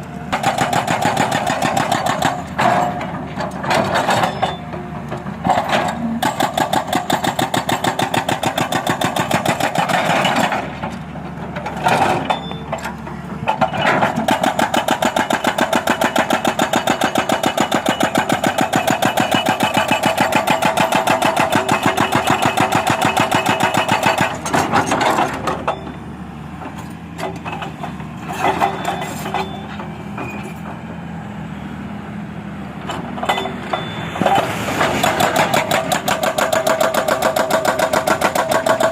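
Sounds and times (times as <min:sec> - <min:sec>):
excavator engine running: 0:00.0 - 0:38.9
hydraulic breaker hammering: 0:13.6 - 0:25.8, 0:34.9 - 0:38.9.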